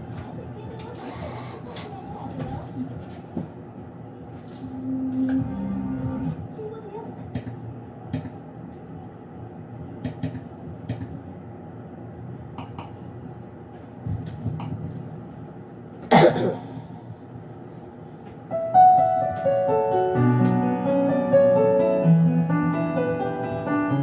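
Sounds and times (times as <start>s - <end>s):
room hum: 0.0s - 20.7s
person coughing: 16.1s - 17.1s
slow piano ballad: 18.6s - 24.0s.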